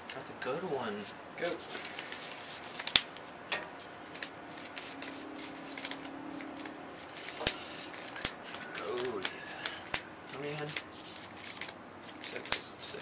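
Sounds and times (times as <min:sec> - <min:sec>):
cards rustling and ticking: 0:01.0 - 0:03.4, 0:04.0 - 0:13.0
cards tapping on a table: 0:06.6 - 0:10.9.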